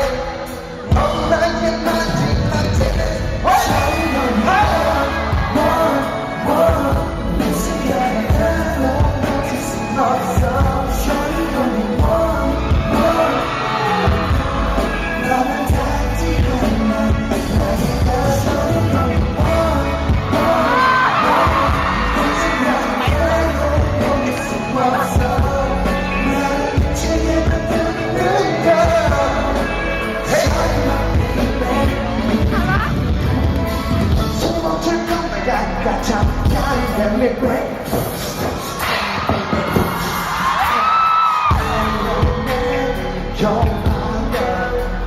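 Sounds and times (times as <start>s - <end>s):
person singing: 0.0s - 45.0s
heavy bass beat: 14.1s - 24.3s.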